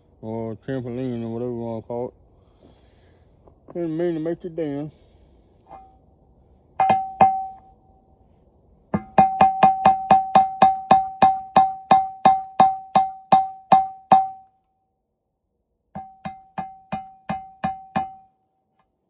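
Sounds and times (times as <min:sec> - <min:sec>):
ringing note struck repeatedly: 0:06.8 - 0:07.6, 0:09.0 - 0:14.5.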